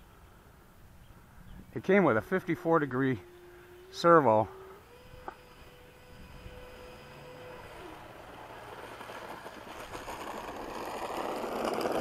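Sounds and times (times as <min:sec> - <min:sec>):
ducted fan whine: 0:00.0 - 0:12.0
ducted fan rushing whoosh: 0:02.0 - 0:10.2.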